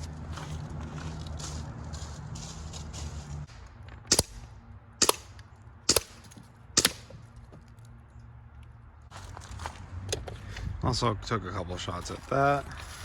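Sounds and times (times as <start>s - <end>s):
air rifle shots: 4.1s - 4.4s, 5.0s - 6.2s, 6.8s - 7.1s.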